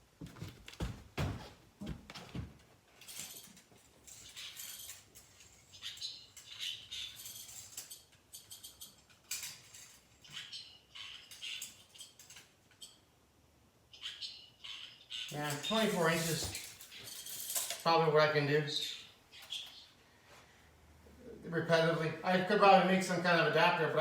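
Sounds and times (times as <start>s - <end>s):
scratching and rustling scrapes: 15.3s - 17.7s.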